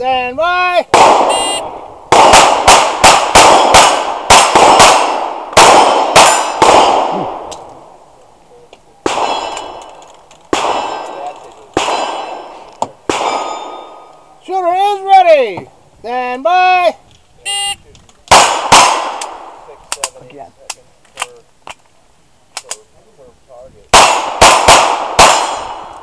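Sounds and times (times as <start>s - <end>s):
pistol shots: 0.9s - 7.5s, 9.0s - 9.9s, 10.5s - 14.0s, 18.3s - 19.6s, 23.9s - 26.0s.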